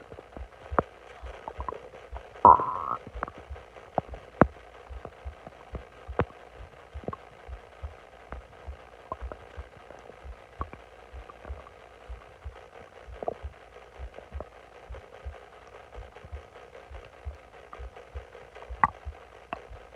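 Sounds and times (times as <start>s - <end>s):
stomach gurgling: 0.0s - 19.9s
small stomach pops: 0.4s - 6.4s, 18.7s - 19.8s.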